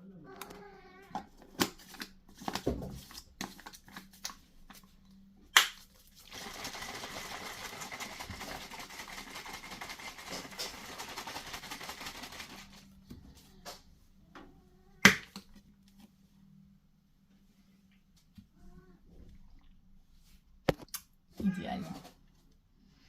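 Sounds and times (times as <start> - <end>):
shaking shake container: 5.8 - 13.0.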